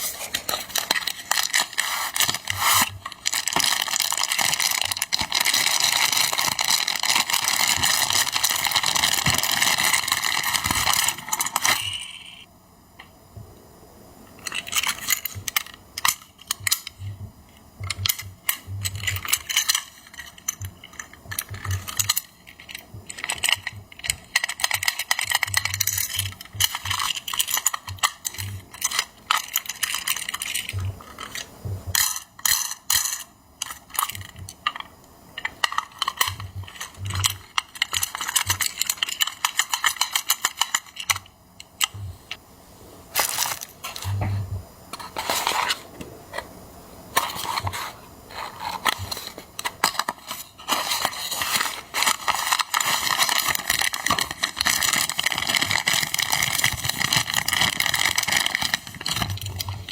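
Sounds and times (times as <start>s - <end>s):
toy truck clicks and clinks: 18.0s - 31.4s, 32.0s - 41.9s.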